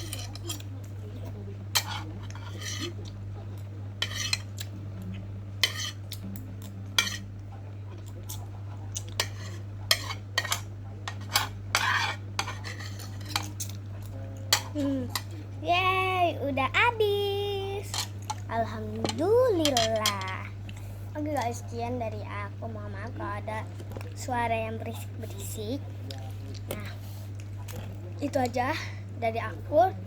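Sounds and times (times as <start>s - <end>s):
steady low hum: 0.0s - 30.0s
spoon scraping a bowl: 1.7s - 3.0s, 4.0s - 4.5s, 5.6s - 6.0s, 7.0s - 7.3s, 9.2s - 13.8s.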